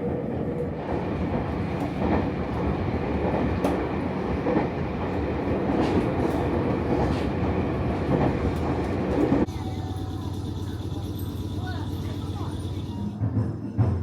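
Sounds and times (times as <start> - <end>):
train wheels rumbling: 0.0 - 14.0.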